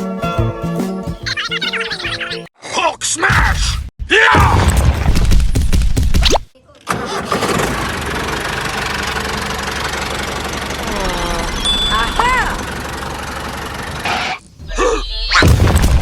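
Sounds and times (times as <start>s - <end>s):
tractor engine running: 6.9s - 14.5s.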